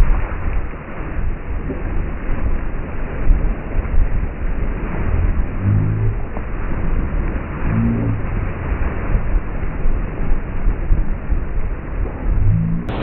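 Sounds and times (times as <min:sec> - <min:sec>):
water rushing past hull: 0:00.0 - 0:13.0
wind buffeting microphone: 0:00.0 - 0:13.0
short low hum: 0:04.9 - 0:08.8, 0:12.0 - 0:13.0.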